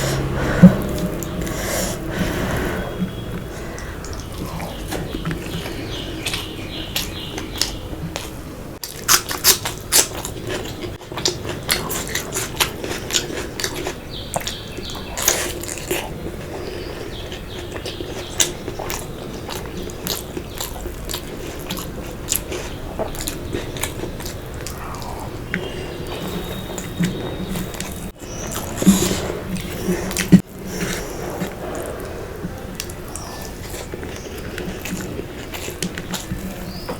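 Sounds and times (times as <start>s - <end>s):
steady low hum: 0.0s - 8.8s
person chewing food: 0.0s - 36.9s.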